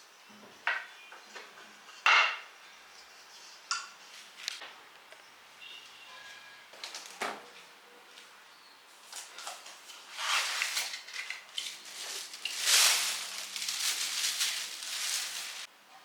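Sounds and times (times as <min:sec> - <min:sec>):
rustling and scraping of handling: 0:06.1 - 0:15.7.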